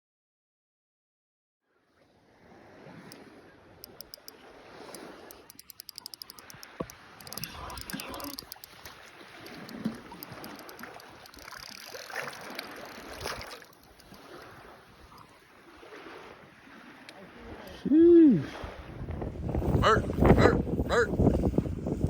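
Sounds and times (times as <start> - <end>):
wind: 1.6 - 22.0
water lapping: 1.8 - 22.0
small splashes: 2.3 - 19.0
fishing reel clicking: 3.8 - 14.5.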